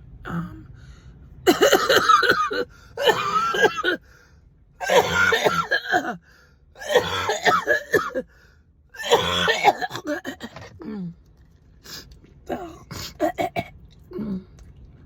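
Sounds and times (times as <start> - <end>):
woman coughing and clearing throat: 1.4 - 4.0, 4.8 - 6.2, 6.8 - 8.3, 9.0 - 10.8, 12.5 - 13.7.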